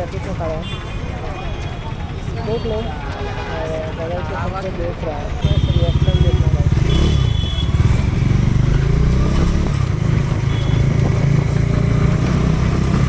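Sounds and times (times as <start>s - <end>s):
city traffic: 0.0s - 13.0s
motorcycle engine idling: 0.0s - 13.0s.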